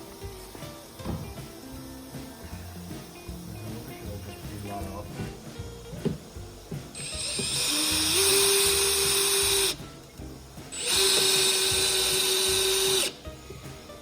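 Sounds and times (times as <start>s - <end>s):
electric drill motor whine: 7.0s - 9.9s, 10.7s - 13.7s.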